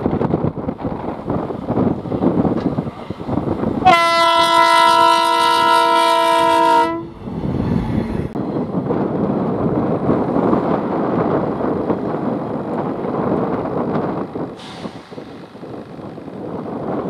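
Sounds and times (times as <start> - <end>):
wind on microphone: 0.0 - 17.0
train horn blast: 3.8 - 7.2.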